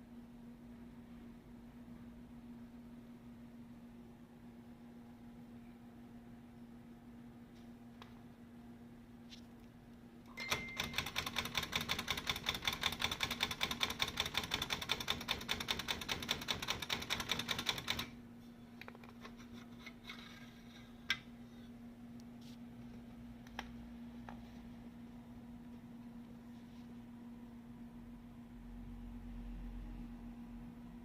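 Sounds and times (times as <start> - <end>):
typewriter typing: 10.4 - 18.2.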